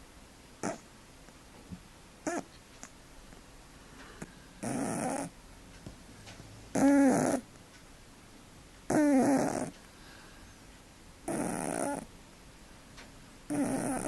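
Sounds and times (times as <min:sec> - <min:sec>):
cat snoring: 0:00.6 - 0:00.8, 0:04.2 - 0:05.4, 0:06.7 - 0:07.4, 0:08.9 - 0:09.7, 0:11.2 - 0:12.1, 0:13.5 - 0:14.0.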